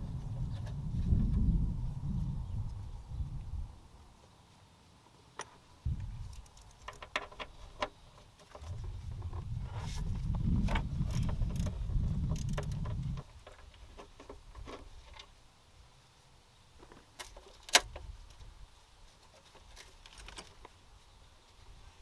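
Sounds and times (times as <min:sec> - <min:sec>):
low rumble: 0:08.6 - 0:13.3.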